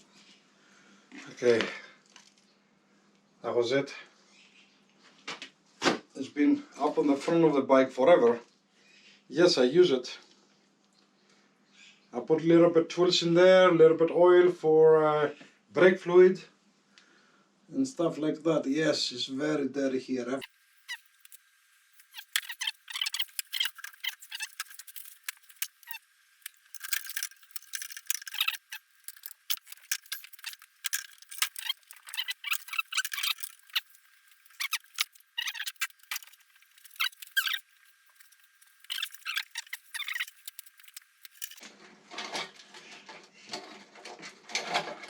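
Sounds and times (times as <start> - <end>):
metal parts and tools rattling: 22.0 - 45.0.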